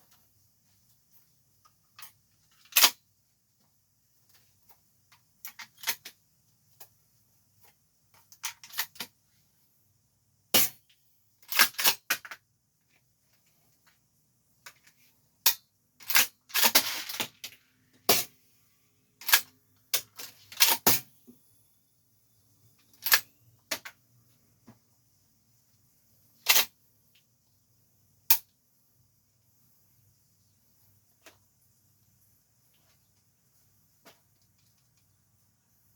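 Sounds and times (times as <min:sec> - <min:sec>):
shotgun reloading clicks and clacks: 0:19.2 - 0:19.5.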